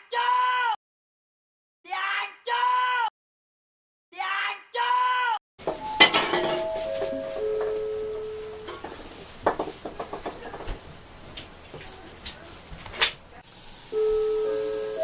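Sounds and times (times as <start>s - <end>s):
metal crash ringing: 5.6s - 9.1s
clinks and rattles: 5.6s - 10.9s.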